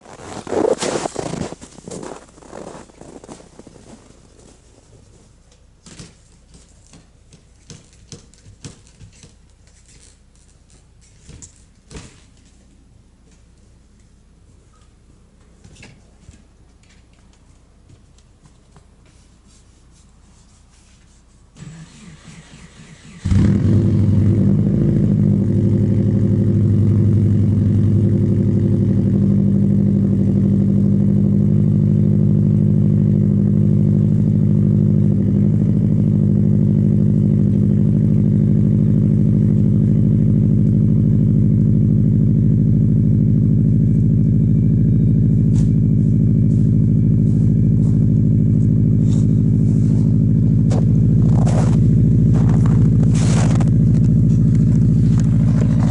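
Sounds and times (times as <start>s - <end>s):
car engine starting and idling: 21.6s - 55.9s.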